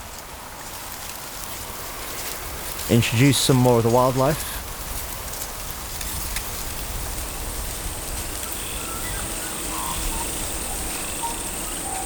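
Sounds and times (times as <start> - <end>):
low wind rumble: 0.0 - 12.0
high insect trill: 6.2 - 12.0
bird or frog chirps: 8.4 - 12.0.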